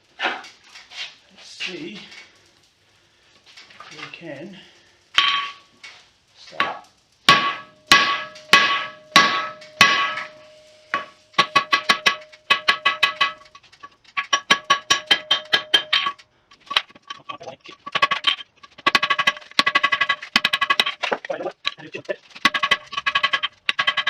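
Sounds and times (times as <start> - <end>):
hammer striking steel on anvil: 6.6 - 13.5, 14.2 - 16.2.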